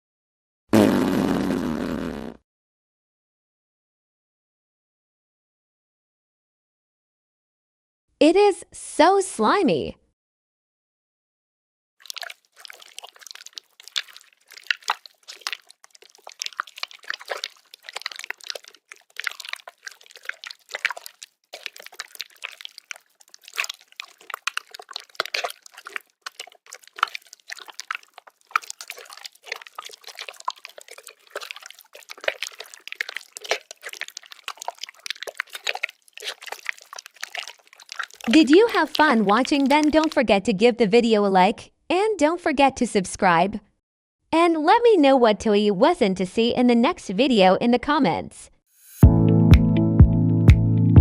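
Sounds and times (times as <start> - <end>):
slime squelching and popping: 12.0 - 40.2.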